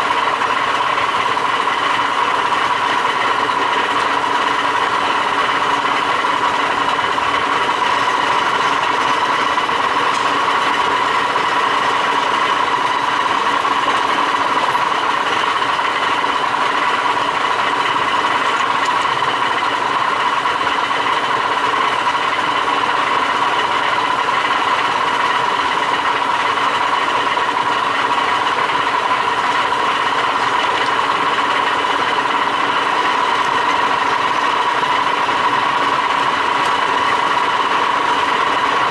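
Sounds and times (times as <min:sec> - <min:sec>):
lathe running with whine: 0:00.0 - 0:38.9.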